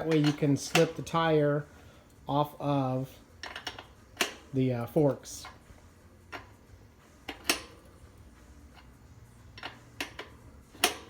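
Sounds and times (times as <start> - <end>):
wrench clinking on axle nuts: 0.0 - 1.2, 9.5 - 11.0.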